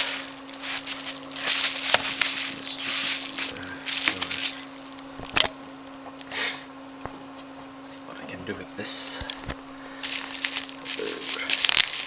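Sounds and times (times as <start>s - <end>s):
packaging crinkling and rustling: 0.0s - 5.5s, 9.4s - 12.0s
steady low hum: 0.0s - 12.0s.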